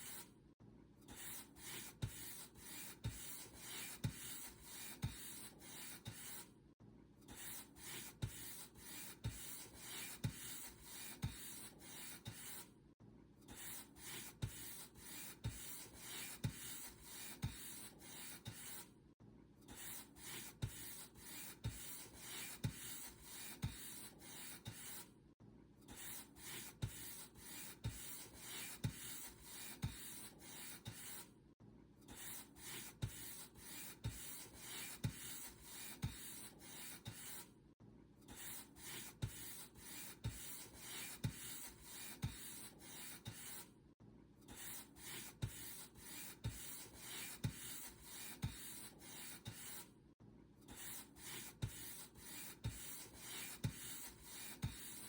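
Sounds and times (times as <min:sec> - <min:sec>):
paintbrush brushing across surface: 0:50.8 - 0:55.0.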